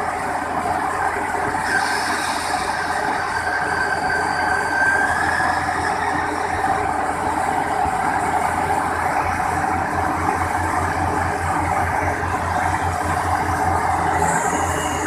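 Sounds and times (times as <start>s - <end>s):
heavy diesel engine running hard: 0.0s - 15.0s
high metallic squeal: 1.6s - 7.2s, 13.4s - 15.0s.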